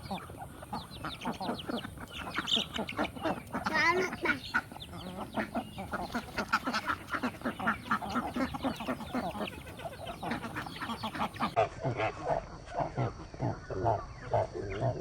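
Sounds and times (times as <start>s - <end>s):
ducks quacking: 0.0s - 15.0s.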